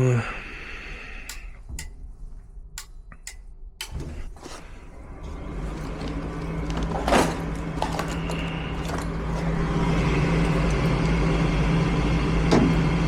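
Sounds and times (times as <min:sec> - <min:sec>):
furnace motor humming: 0:03.8 - 0:13.0.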